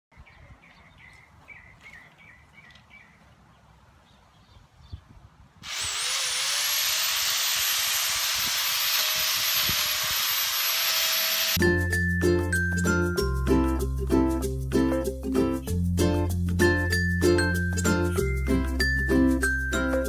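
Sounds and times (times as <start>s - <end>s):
electric power tool motor whine: 5.6s - 11.6s.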